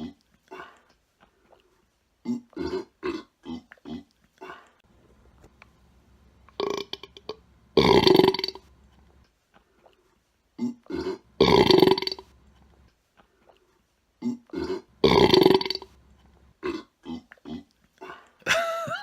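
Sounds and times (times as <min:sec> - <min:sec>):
person burping: 0:02.2 - 0:04.8, 0:06.6 - 0:08.6, 0:10.6 - 0:12.2, 0:14.2 - 0:15.9.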